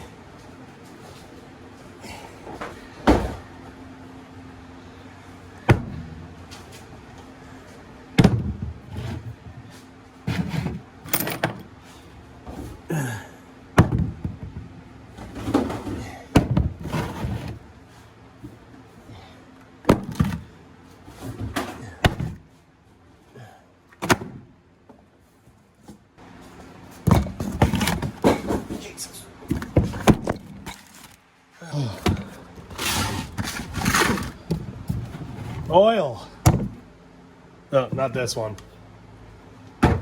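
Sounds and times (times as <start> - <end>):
objects knocking as set down: 19.9 - 20.5, 27.0 - 28.8.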